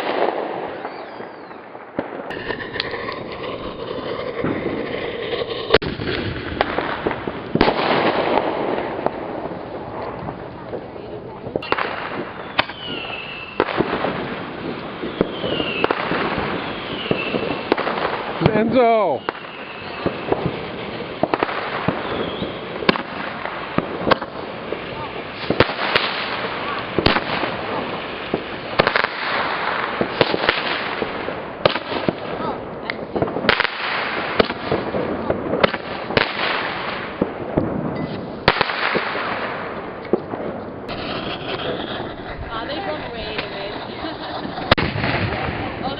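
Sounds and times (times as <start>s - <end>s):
fireworks bangs: 0.0s - 45.9s
fireworks crackling: 0.0s - 45.9s
whistling fireworks: 0.0s - 45.9s.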